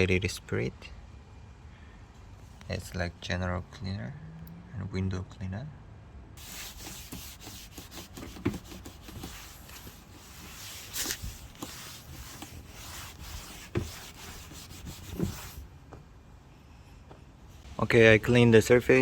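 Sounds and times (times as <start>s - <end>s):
rag rubbing over wooden tabletop: 6.4s - 15.6s.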